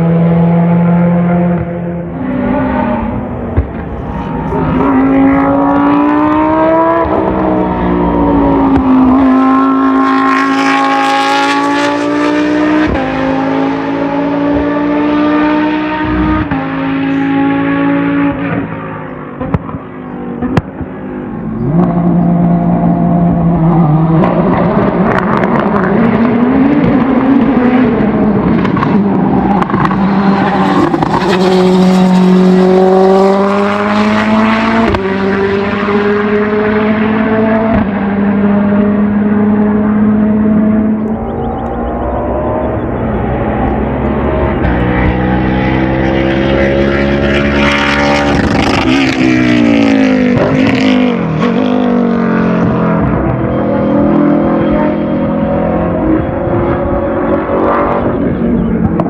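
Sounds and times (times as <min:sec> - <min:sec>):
race car engine accelerating: 0:00.0 - 0:59.0.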